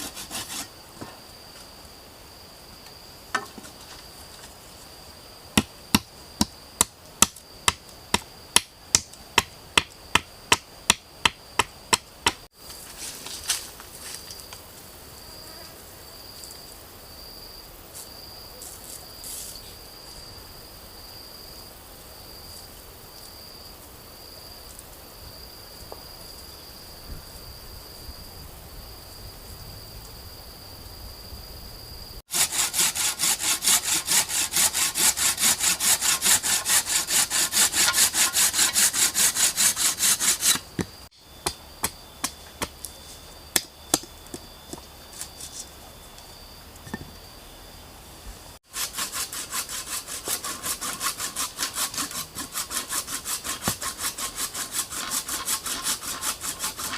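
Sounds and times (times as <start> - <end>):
hand saw cutting wood: 0.0 - 0.8, 32.3 - 40.9, 48.6 - 56.9
insect trill: 0.0 - 56.9.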